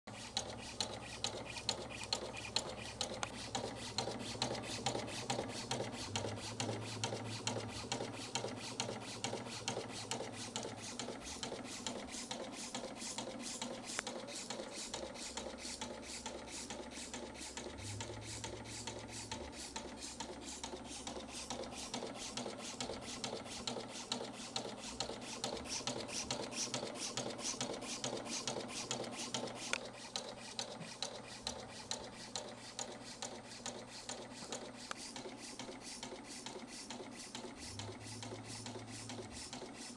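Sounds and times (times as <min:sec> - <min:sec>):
cutter chopping rapid clicks: 0:00.2 - 0:39.8
low motor hum: 0:04.5 - 0:08.0, 0:17.5 - 0:20.6, 0:37.6 - 0:39.4.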